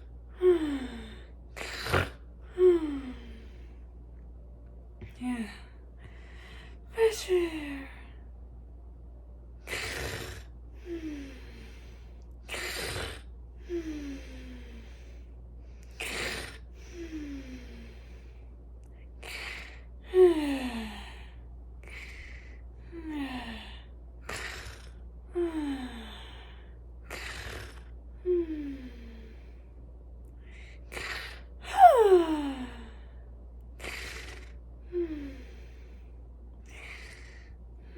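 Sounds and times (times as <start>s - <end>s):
woman snoring cartoonishly: 0.4s - 3.6s, 9.7s - 15.2s, 15.9s - 18.2s, 19.2s - 21.2s, 21.9s - 29.5s, 30.9s - 33.0s, 33.8s - 36.0s, 36.7s - 37.5s.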